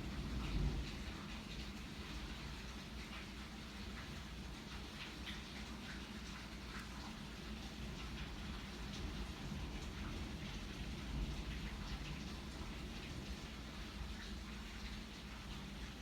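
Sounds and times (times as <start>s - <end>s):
rain falling: 0.0s - 16.0s.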